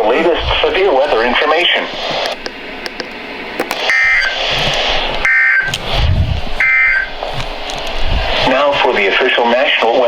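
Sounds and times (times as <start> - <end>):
two-tone digital data bursts: 3.8 - 4.4, 5.2 - 5.7, 6.6 - 7.2.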